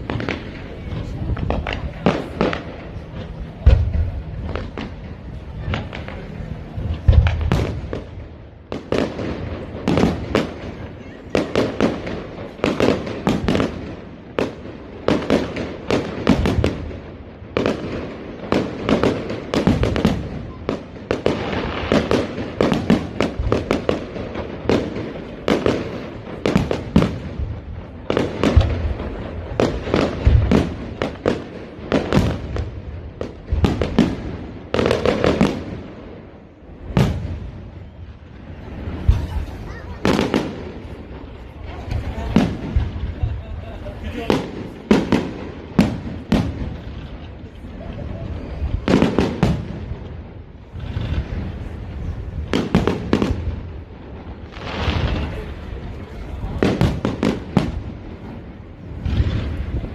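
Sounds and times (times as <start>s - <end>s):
fireworks bangs and crackling: 0.0s - 59.9s.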